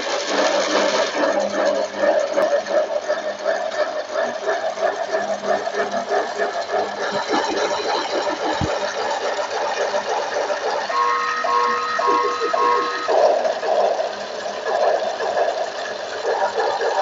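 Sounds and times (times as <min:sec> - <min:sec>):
rhythmic mechanical clatter: 0:00.0 - 0:17.0
electronic alarm beeping: 0:10.9 - 0:13.4.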